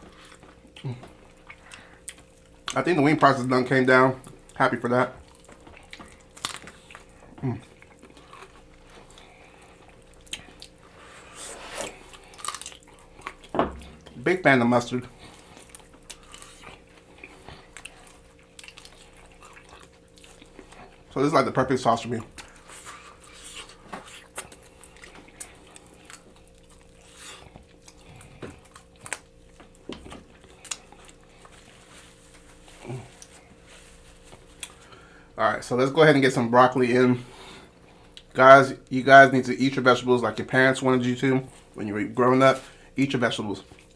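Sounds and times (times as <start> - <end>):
chewing chicken wing: 0.0 - 14.3, 14.9 - 35.1, 43.6 - 43.9.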